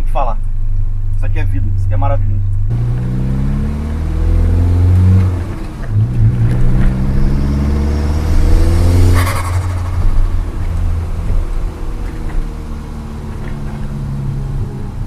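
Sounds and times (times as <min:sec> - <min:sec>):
car engine accelerating: 0:00.4 - 0:15.0
turbo flutter: 0:05.0 - 0:14.0
turbo whistle: 0:07.3 - 0:10.8.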